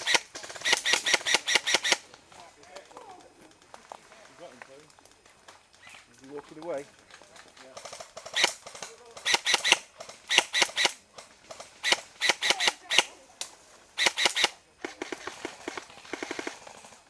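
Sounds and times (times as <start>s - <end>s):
airsoft guns firing: 0.0s - 2.1s, 7.8s - 13.1s, 14.0s - 17.0s.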